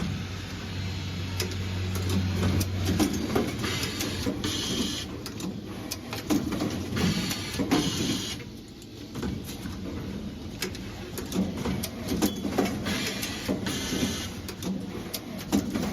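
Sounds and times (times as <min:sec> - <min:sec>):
machine mechanical hum: 0:00.0 - 0:15.9.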